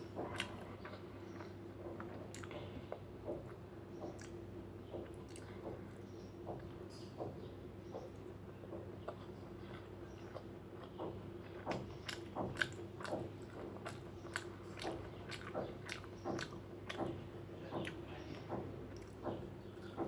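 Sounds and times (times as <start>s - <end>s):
person chewing with mouth sounds: 0.2s - 5.8s, 9.0s - 18.0s.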